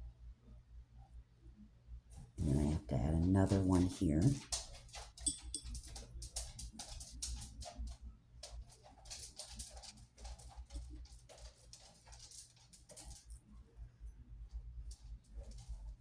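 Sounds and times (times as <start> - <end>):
low steady hum: 0.0 - 16.0
metal rings and beads clicking: 4.5 - 7.4, 11.5 - 13.5.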